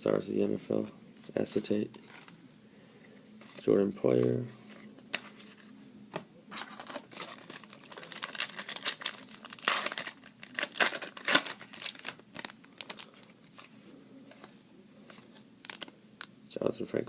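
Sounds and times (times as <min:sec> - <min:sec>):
wrapper tearing and crinkling: 0:06.6 - 0:13.4, 0:15.6 - 0:15.9.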